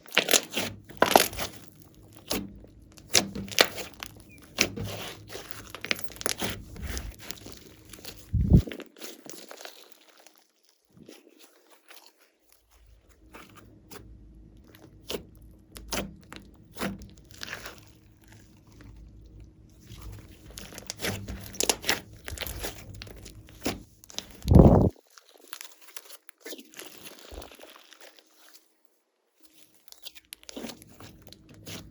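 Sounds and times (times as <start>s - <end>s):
slime crackling and popping: 0.0s - 10.4s, 19.8s - 24.9s, 25.6s - 28.5s.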